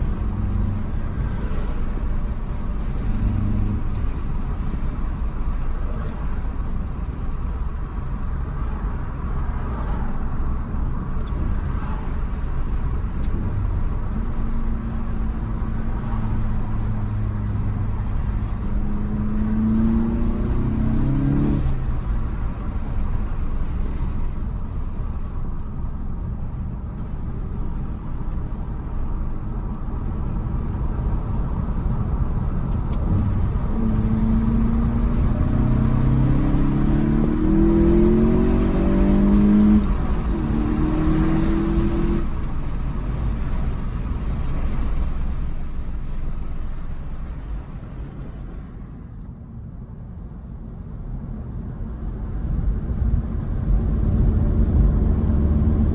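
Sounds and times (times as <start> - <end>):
turbocharged car engine: 0.0 - 49.4
road rumble: 0.0 - 55.9.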